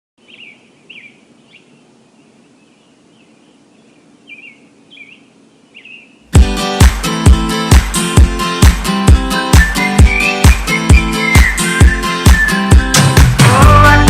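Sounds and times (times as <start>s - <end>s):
faint steady hum: 0.2s - 6.4s
birds chirping: 0.2s - 14.0s.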